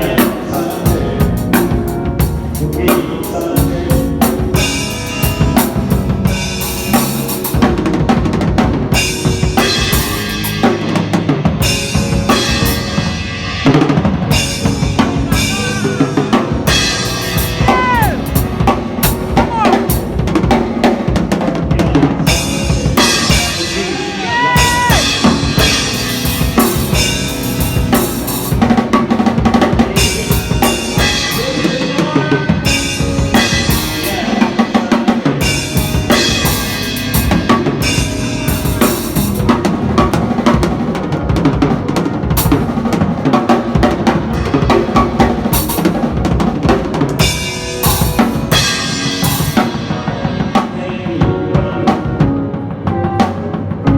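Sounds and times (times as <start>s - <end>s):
pitched instruments: 0.0s - 51.5s
drum kit solo: 0.0s - 53.9s.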